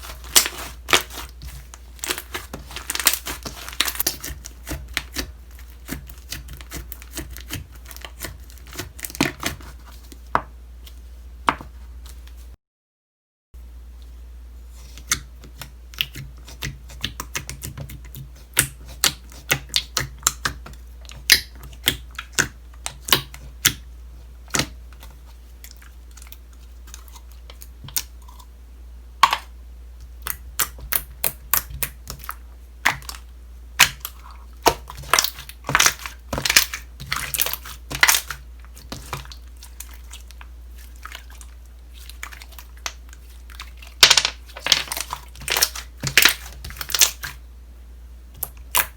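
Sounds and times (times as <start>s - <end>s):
steady low hum: 18.0s - 48.9s.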